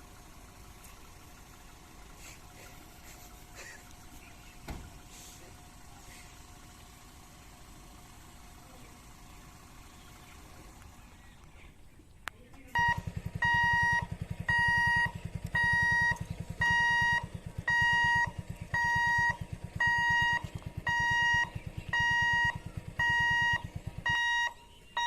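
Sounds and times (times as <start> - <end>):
level crossing alarm beeping: 12.8 - 25.0.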